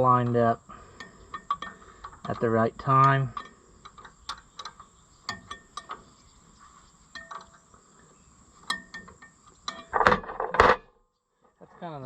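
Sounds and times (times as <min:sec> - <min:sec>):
scraping rasps: 0:00.0 - 0:10.5
wrench clinking on metal: 0:01.0 - 0:06.0, 0:08.6 - 0:10.0.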